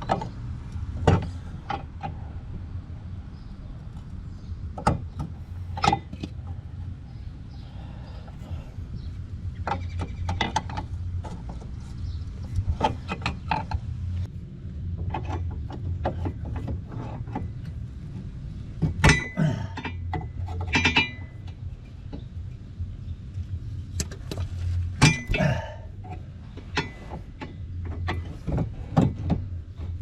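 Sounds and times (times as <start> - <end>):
low steady hum: 0.0 - 30.0
metal tools clinking: 19.0 - 21.4
ringing metal clang: 19.0 - 21.4, 25.0 - 25.8.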